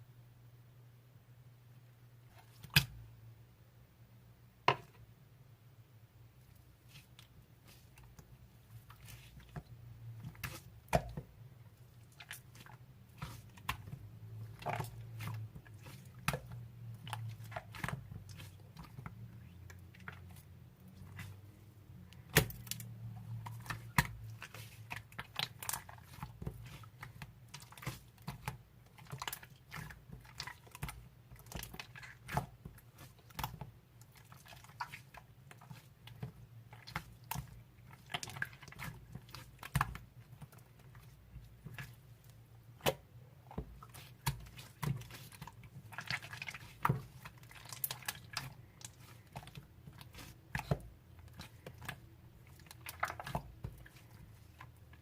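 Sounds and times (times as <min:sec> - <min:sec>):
slime squished by hand: 0:12.0 - 0:55.0.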